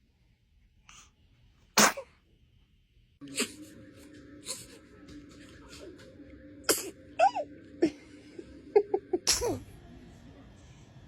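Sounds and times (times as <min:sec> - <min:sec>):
baby sneezing: 0:01.8 - 0:02.2, 0:06.7 - 0:07.0, 0:09.3 - 0:09.6.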